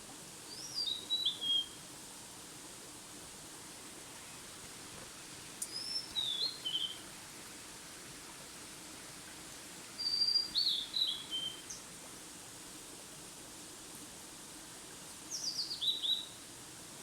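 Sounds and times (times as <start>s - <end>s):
background hiss: 0.0s - 17.0s
songbird singing: 0.5s - 1.8s, 5.6s - 7.0s.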